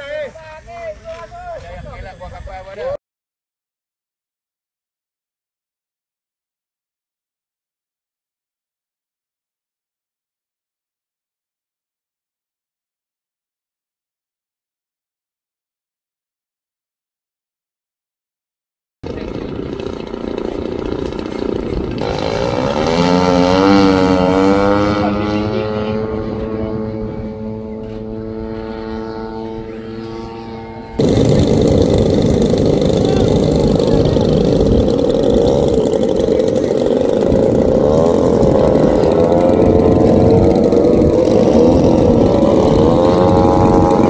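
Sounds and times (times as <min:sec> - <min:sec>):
wind rumble on microphone: 0:01.4 - 0:03.0, 0:19.1 - 0:44.0
model aircraft engine running: 0:19.0 - 0:44.0.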